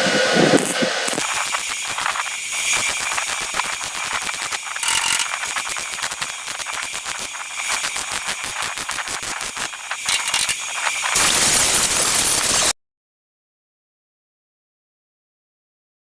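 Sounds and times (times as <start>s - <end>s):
steady high whine: 0.0s - 12.7s
rapid mechanical clicking rattle: 1.1s - 11.7s.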